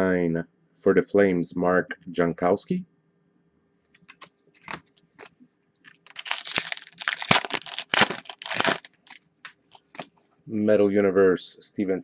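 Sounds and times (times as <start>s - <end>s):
trading cards clicking and rustling: 4.0s - 10.1s
plastic wrapper crinkling: 4.1s - 10.1s.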